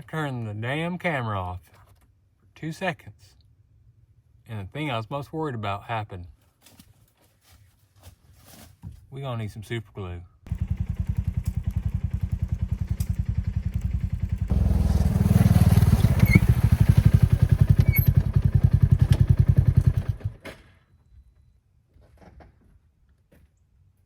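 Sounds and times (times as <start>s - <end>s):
engine chugging: 10.5s - 20.4s.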